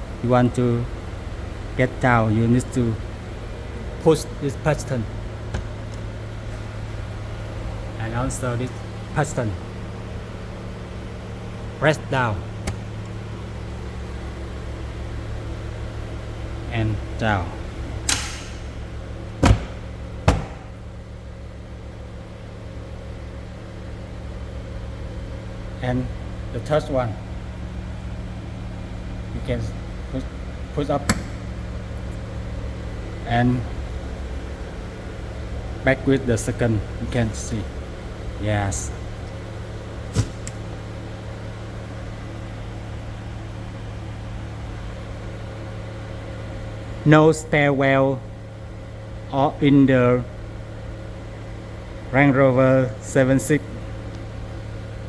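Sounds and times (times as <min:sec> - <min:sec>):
steady low hum: 0:00.0 - 0:55.0
sharp thump: 0:18.1 - 0:18.8, 0:19.4 - 0:20.7, 0:40.1 - 0:40.5
light hiss: 0:40.1 - 0:40.6.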